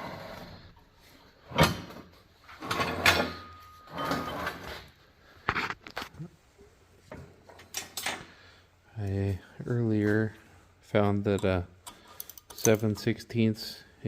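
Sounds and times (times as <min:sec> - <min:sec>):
metal scraping: 0:01.9 - 0:04.9
wrench clanking on metal: 0:11.3 - 0:13.1.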